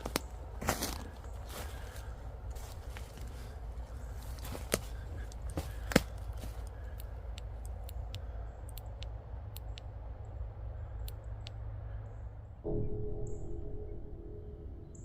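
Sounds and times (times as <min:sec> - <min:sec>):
footsteps through leaf litter: 0:00.0 - 0:06.6
faint light ticks: 0:04.7 - 0:09.9, 0:11.0 - 0:11.6.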